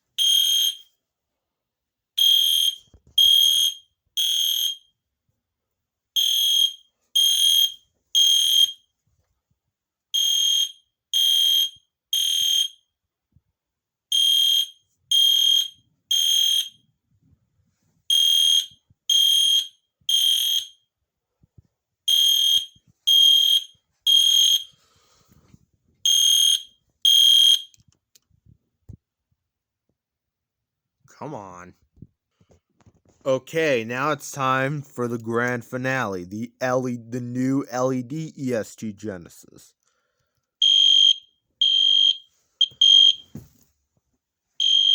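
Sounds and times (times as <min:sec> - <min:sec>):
fire alarm horn beeping: 0:00.2 - 0:01.0, 0:02.2 - 0:05.0, 0:06.2 - 0:08.9, 0:10.2 - 0:12.9, 0:14.1 - 0:16.9, 0:18.1 - 0:20.9, 0:22.1 - 0:24.8, 0:26.1 - 0:27.8, 0:40.6 - 0:43.3, 0:44.6 - 0:44.9.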